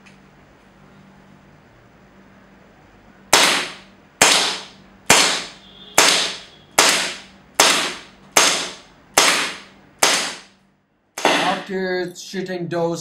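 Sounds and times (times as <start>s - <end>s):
airsoft gun shots: 3.3s - 10.5s, 11.2s - 11.7s.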